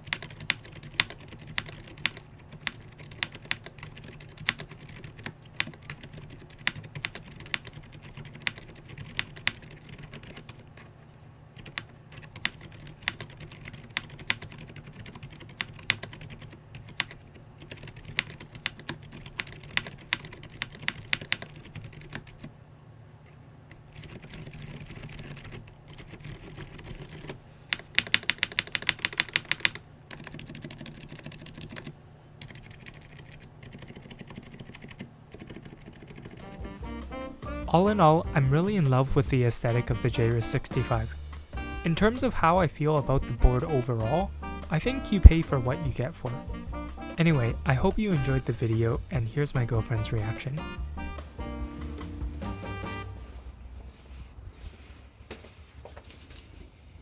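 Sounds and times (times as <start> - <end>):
soft muted keyboard typing: 0.0 - 22.6, 23.7 - 36.7.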